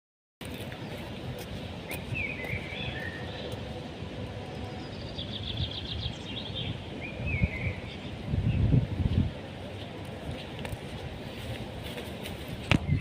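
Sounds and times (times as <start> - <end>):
birds chirping: 0.4 - 9.0
outdoor background noise: 0.4 - 13.0.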